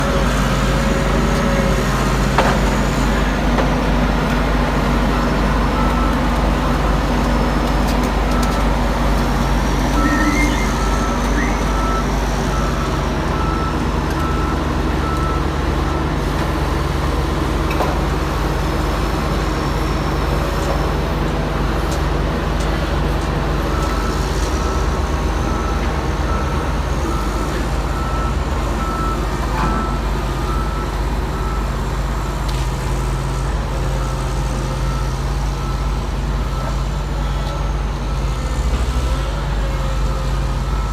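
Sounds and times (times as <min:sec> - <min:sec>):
excavator diesel engine running: 0:00.0 - 0:40.9
high beeping alarm: 0:09.8 - 0:13.7.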